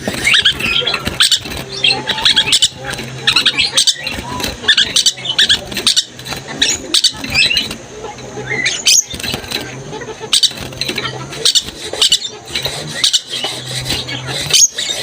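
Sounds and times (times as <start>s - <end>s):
lorikeet chattering: 0.0s - 15.0s.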